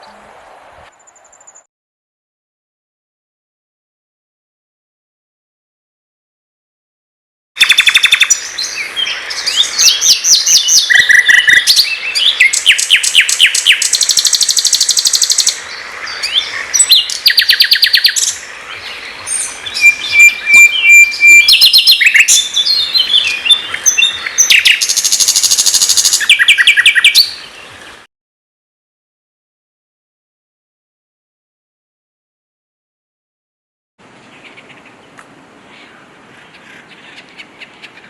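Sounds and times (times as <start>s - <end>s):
songbird singing trills: 7.6s - 27.8s.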